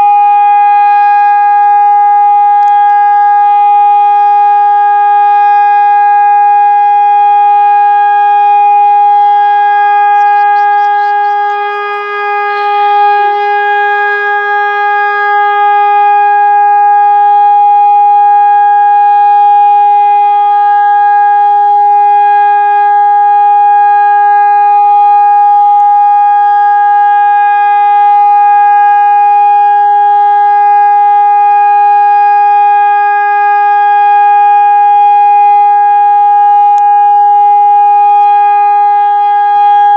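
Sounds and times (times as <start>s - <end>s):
steady warning siren tone: 0.0s - 39.9s.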